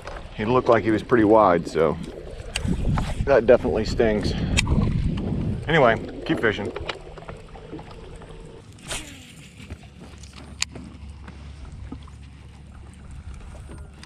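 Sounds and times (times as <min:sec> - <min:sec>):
short swish: 0:08.8 - 0:09.5.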